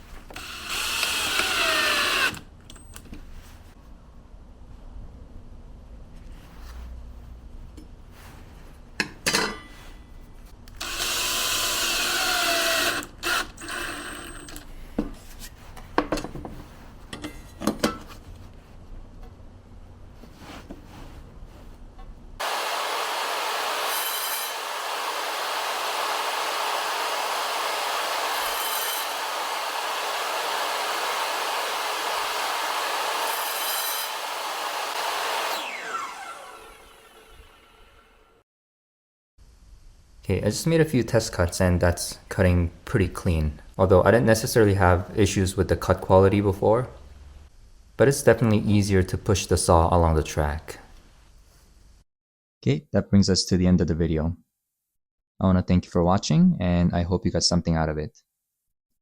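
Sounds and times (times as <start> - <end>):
track saw cutting wood: 0.3 - 3.0, 10.8 - 14.5, 22.4 - 38.4
tool handling knocks and clicks: 15.8 - 18.1.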